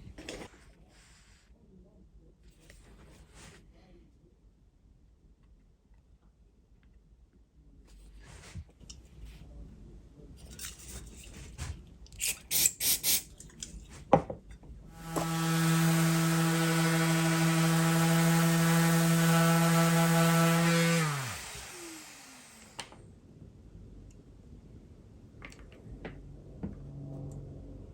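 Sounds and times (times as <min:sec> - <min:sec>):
power tool motor running: 0:15.0 - 0:22.9.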